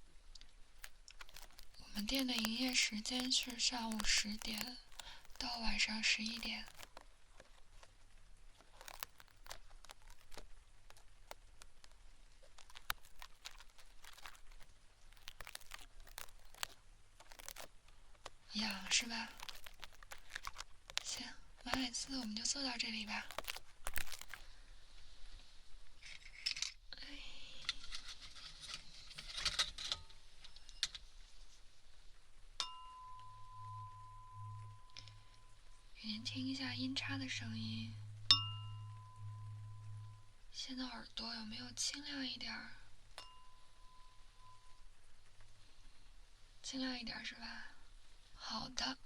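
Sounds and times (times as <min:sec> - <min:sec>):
brush scratching in ear: 0:01.1 - 0:06.9
tuning fork ringing: 0:32.6 - 0:36.0, 0:36.6 - 0:40.6, 0:43.2 - 0:45.0.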